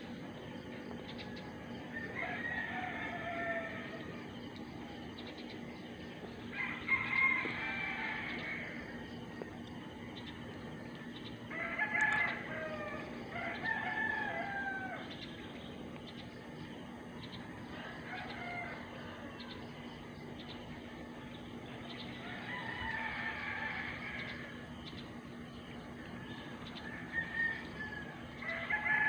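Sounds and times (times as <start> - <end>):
rooster crowing: 1.9 - 4.2, 6.5 - 9.0, 11.5 - 15.1, 17.7 - 19.6, 22.2 - 24.6, 26.3 - 29.0.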